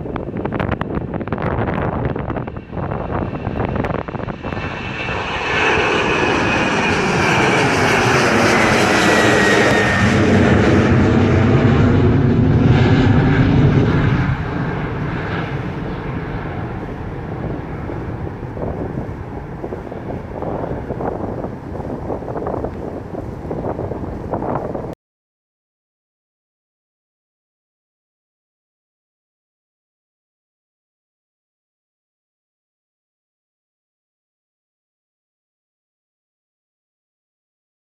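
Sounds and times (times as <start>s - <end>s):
falling jet engine whine: 0.0s - 25.0s
jet plane passing by: 0.0s - 25.0s.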